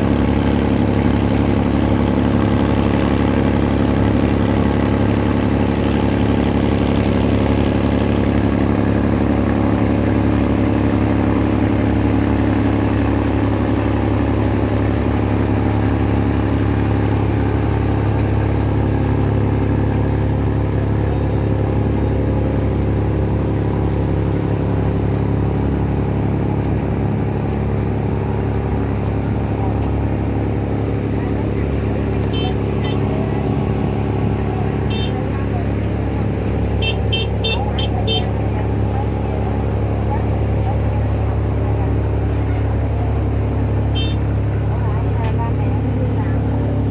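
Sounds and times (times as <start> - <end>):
engine droning steadily: 0.0 - 46.9.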